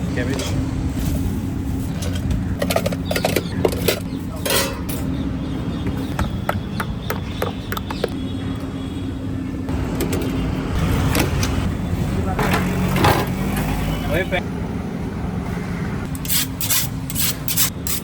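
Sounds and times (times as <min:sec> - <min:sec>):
low hum of street noise: 0:00.0 - 0:18.0
metal utensils clinking: 0:02.0 - 0:05.1.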